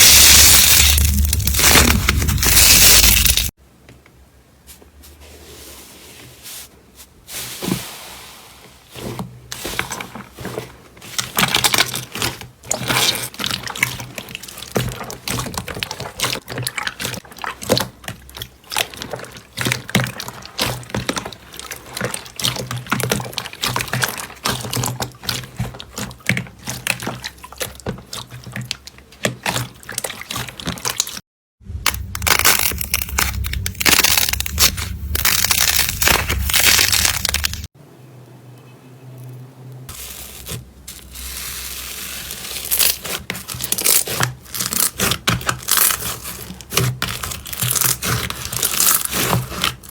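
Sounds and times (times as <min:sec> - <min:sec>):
slime squishing and crackling: 0:00.0 - 0:03.6, 0:08.9 - 0:31.2, 0:31.8 - 0:37.7, 0:39.9 - 0:49.9.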